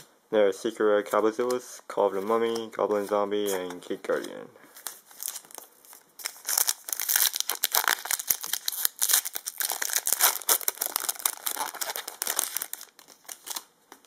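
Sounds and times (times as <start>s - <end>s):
foil wrapper crinkling and tearing: 4.8s - 13.7s.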